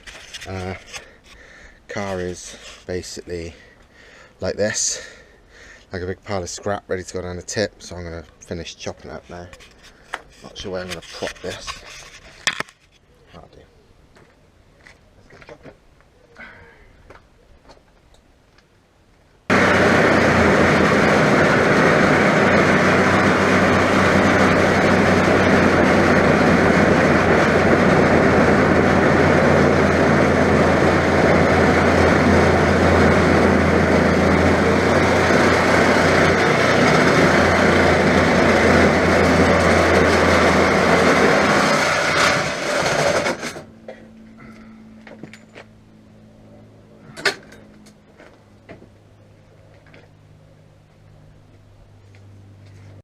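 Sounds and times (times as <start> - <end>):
reciprocating saw cutting steel: 19.5 - 43.7.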